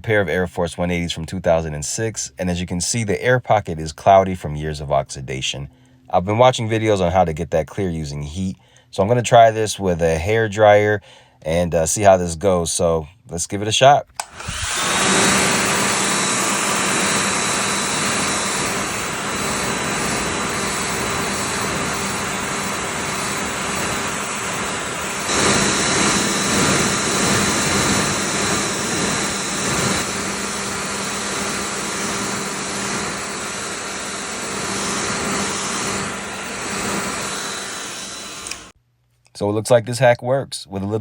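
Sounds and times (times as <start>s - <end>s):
hair dryer blowing: 14.2s - 38.8s.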